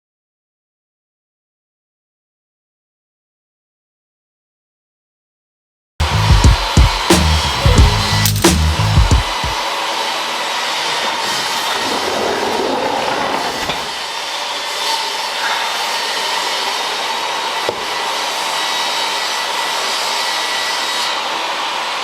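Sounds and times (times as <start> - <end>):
low rumble: 6.0 - 9.3
blower-like rushing noise: 6.0 - 22.0
sharp click: 8.2 - 8.9.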